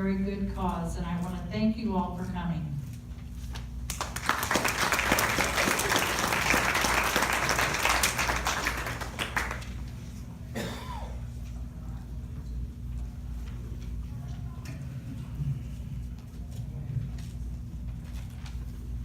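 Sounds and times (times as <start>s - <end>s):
audience applauding: 3.9s - 10.0s.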